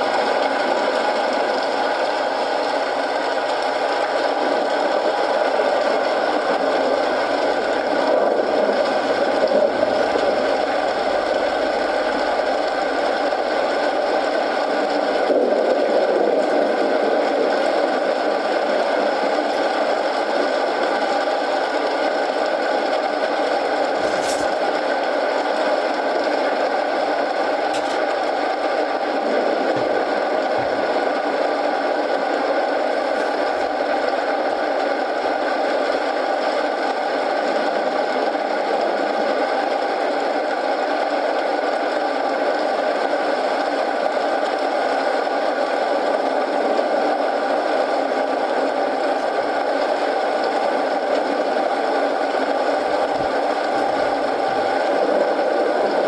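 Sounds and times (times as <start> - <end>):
steady rain hiss: 0.0 - 36.7, 42.7 - 56.0
wood fire crackling and popping: 3.5 - 31.4.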